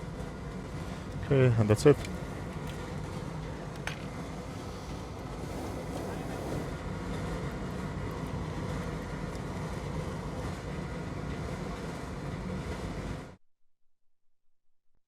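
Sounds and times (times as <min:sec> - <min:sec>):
steady rushing noise: 0:00.0 - 0:08.9.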